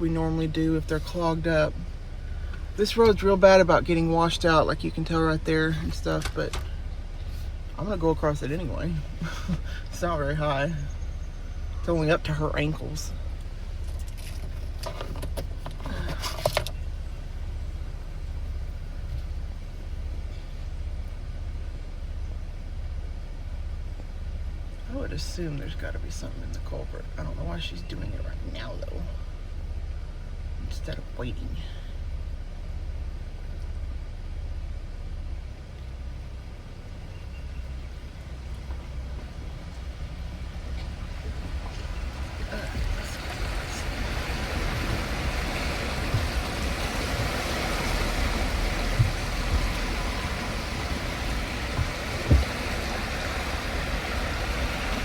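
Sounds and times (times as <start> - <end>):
vehicle engine running: 0.0 - 55.0
light clicks and rattles: 13.4 - 16.9.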